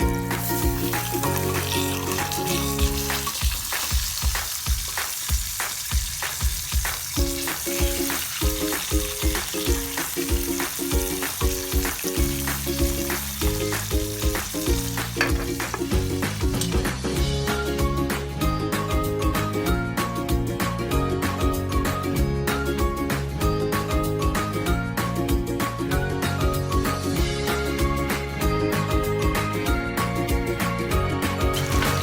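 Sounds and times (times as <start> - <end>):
food sizzling in hot oil: 0.0 - 17.2, 31.4 - 32.0
background music with steady beat: 0.0 - 32.0.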